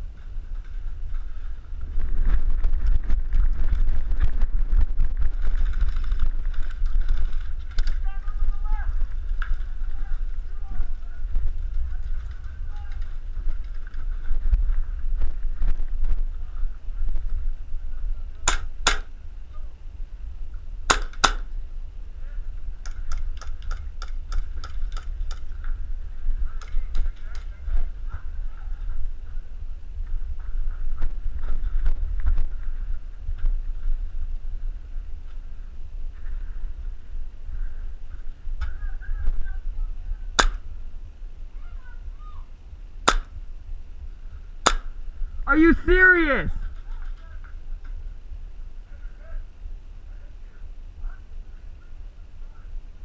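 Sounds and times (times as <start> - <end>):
wind and handling rumble: 0.0 - 45.5, 46.2 - 53.0
airsoft pistol shots: 18.5 - 19.1, 20.9 - 21.5, 40.4 - 40.6, 43.1 - 43.3, 44.6 - 44.9.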